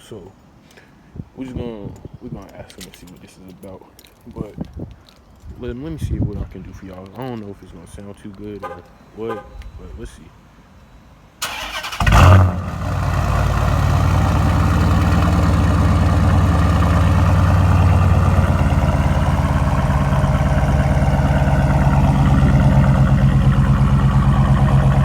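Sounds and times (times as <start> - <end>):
car engine idling: 11.4 - 25.0
car engine starting: 11.4 - 25.0.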